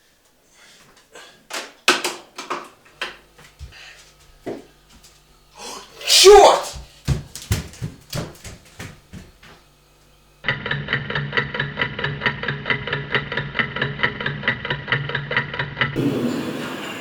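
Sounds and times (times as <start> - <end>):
knocks: 6.8 - 9.6.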